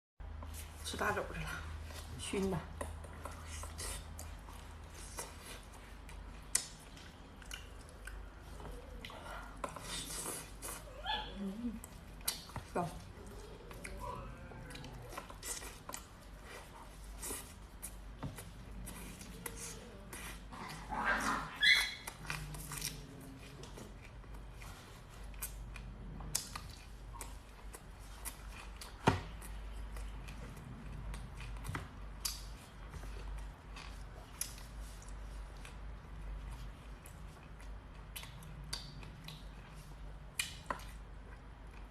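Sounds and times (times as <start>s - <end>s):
wet chewing and smacking: 1.5s - 41.9s.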